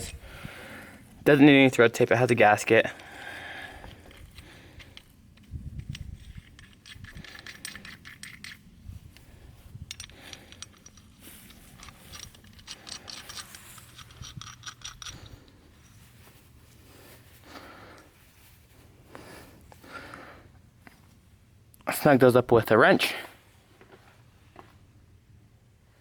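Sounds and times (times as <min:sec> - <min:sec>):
metal hose fittings clinking: 0:03.8 - 0:16.2.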